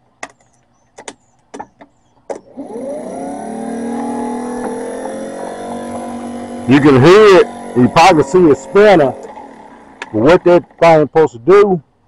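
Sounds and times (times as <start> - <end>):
starter motor whine: 2.2 - 11.3.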